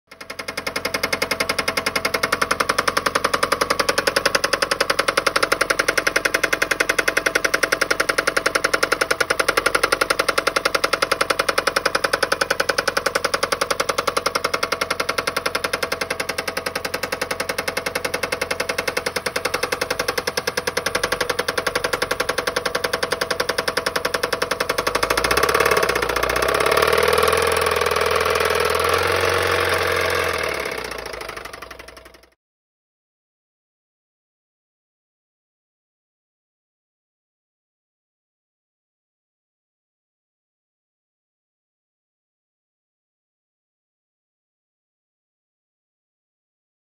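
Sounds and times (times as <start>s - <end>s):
car engine with metallic knock: 0.1s - 32.4s.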